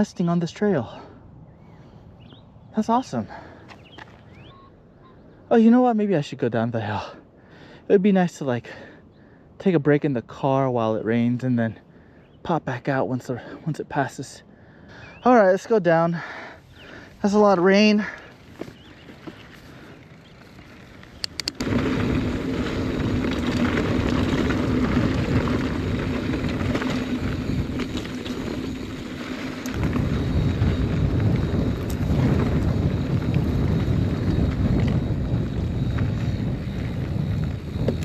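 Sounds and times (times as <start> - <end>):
bike tyres rolling on dirt: 3.0 - 4.5, 15.0 - 38.0
wind buffeting microphone: 16.6 - 38.0
sharp clicks: 21.0 - 21.6.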